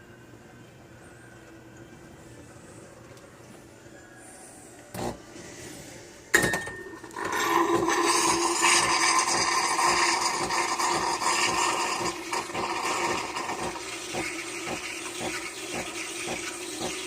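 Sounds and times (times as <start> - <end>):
coffee machine pump humming: 4.7 - 17.0.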